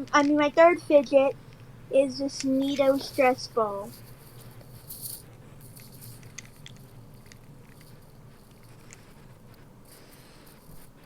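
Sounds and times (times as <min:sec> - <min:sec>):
small clicks: 0:01.0 - 0:01.7.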